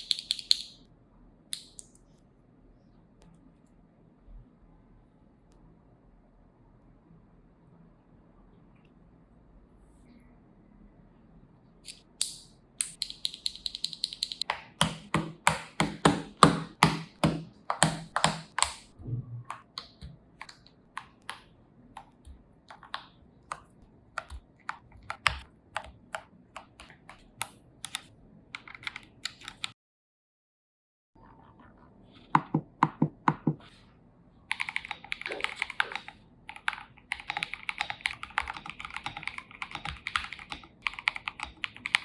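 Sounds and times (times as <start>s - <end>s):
mechanical keyboard keys clacking: 0.0s - 0.8s, 12.2s - 18.9s, 19.5s - 29.7s, 34.5s - 42.0s.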